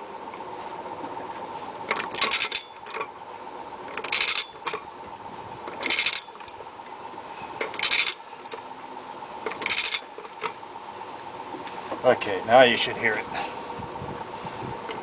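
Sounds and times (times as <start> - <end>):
torque wrench ratchet rasping: 2.0 - 3.0, 4.0 - 4.7, 5.8 - 6.4, 7.7 - 8.2, 9.5 - 10.0.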